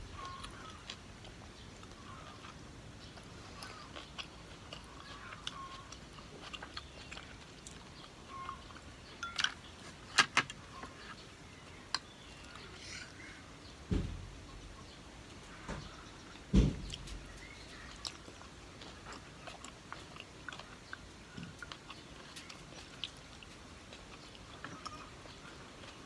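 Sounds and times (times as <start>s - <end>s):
wet chewing and mouth noises: 0.0s - 13.8s, 14.5s - 26.0s
low thump: 13.9s - 14.3s, 16.5s - 17.0s.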